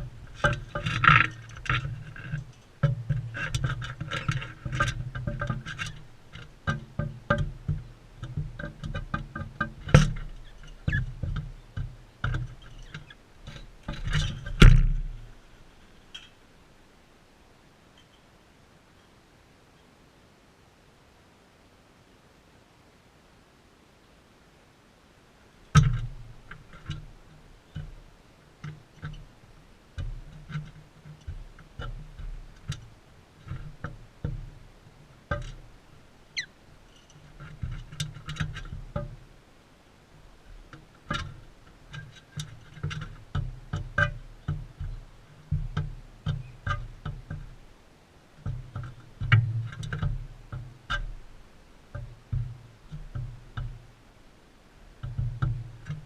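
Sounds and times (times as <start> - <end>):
birds pecking seed: 0.0 - 19.9, 25.2 - 56.0
bird chirp: 36.3 - 37.1.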